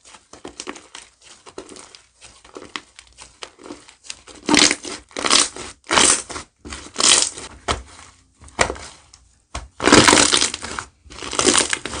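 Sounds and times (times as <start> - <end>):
slime squeezed by hand crackling: 2.5 - 7.5, 9.8 - 12.0.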